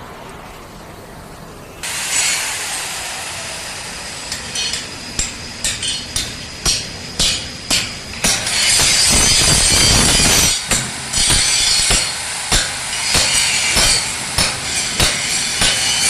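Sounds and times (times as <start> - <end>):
steady hiss: 0.0 - 16.0
sharp metallic knocks: 3.4 - 16.0.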